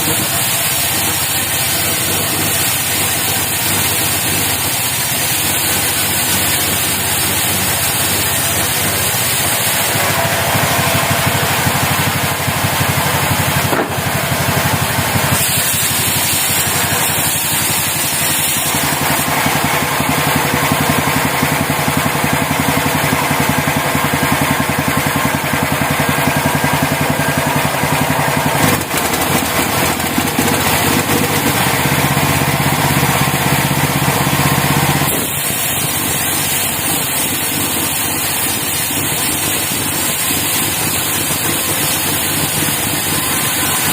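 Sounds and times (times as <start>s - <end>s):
sawmill engine running: 0.0s - 43.9s.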